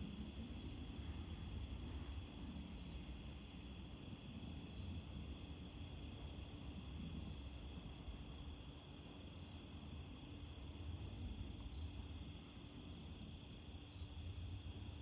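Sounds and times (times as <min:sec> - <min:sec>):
crickets chirping: 0:00.0 - 0:15.0
high insect trill: 0:00.0 - 0:15.0.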